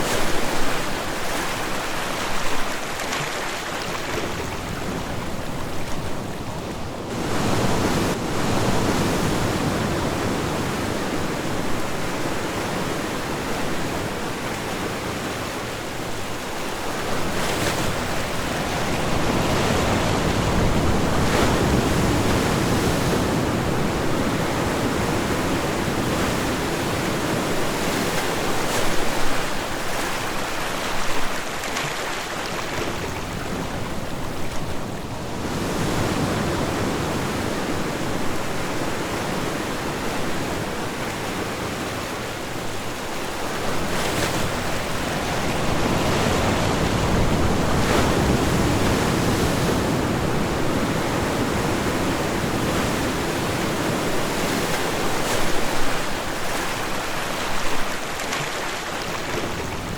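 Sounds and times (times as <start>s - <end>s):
water splashes: 0.0s - 6.1s
ocean waves washing ashore: 0.0s - 59.9s.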